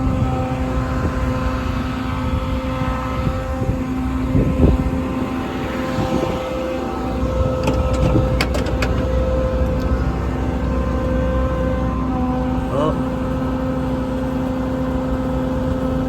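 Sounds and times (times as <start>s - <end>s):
steady whine: 0.0s - 16.0s
truck diesel engine running: 0.0s - 16.0s.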